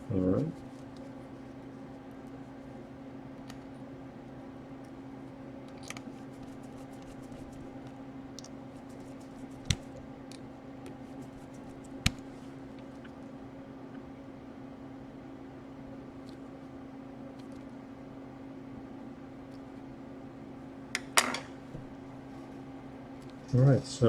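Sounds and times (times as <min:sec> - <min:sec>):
light clicks of small parts: 0:03.4 - 0:03.8.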